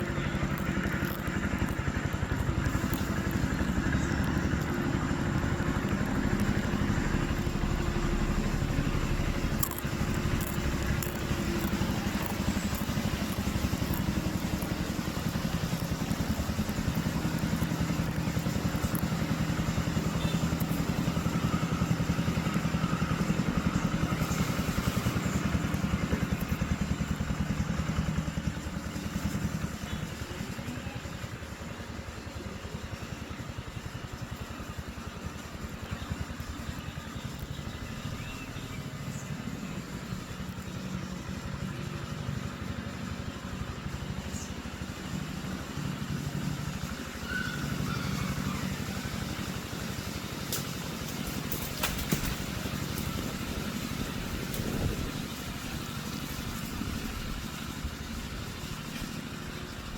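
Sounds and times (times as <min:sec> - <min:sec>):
light clicks and crackle: 0:00.0 - 0:27.7, 0:49.4 - 0:57.0
engine running steadily: 0:00.0 - 0:59.9.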